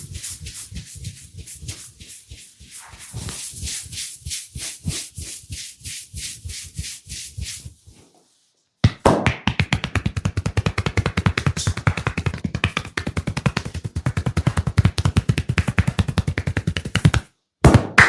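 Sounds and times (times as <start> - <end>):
hands scratching hair and scalp: 0.0 - 8.4.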